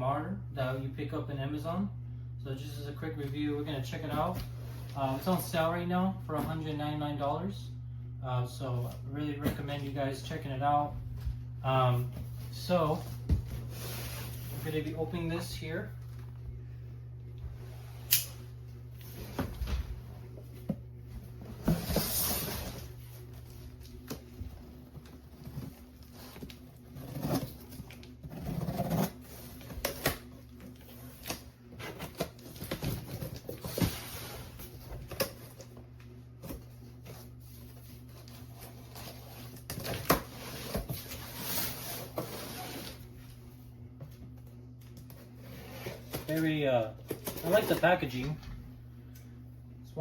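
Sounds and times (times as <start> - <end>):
steady low hum: 0.0 - 50.0
cardboard packaging rustling: 20.6 - 35.8, 45.1 - 48.2.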